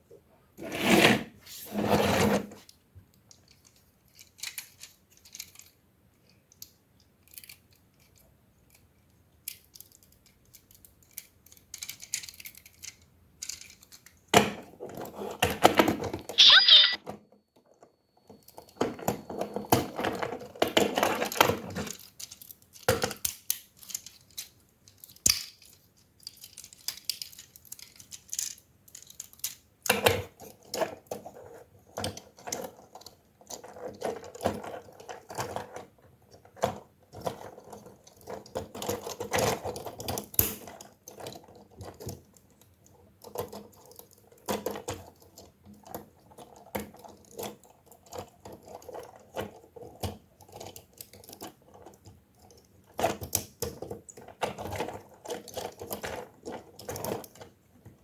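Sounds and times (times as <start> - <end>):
plastic toy parts clicking and snapping: 3.1 - 14.7, 20.6 - 31.2, 36.5 - 57.6.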